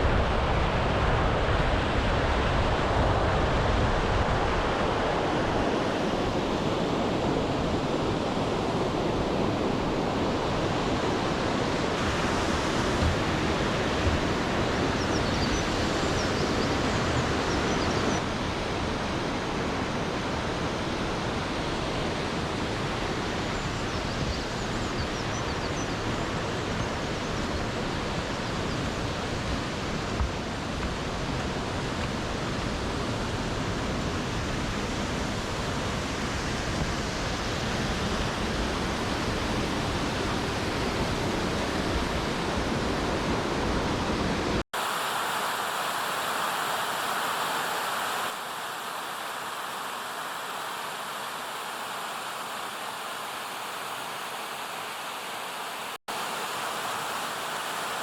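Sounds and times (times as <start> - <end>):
stream water rushing: 0.0 - 58.0.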